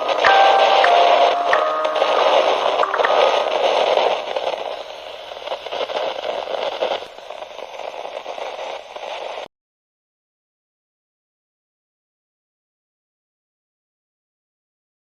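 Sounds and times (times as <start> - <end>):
radio static hiss: 0.0 - 9.5.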